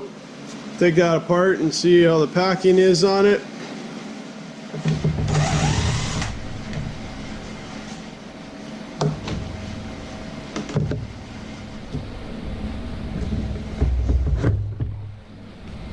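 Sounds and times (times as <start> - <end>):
small electric motor whirring: 5.2 - 6.4.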